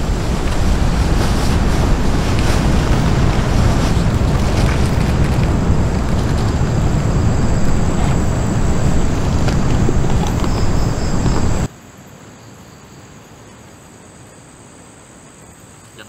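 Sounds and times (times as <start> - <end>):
wind buffeting microphone: 0.0 - 11.7.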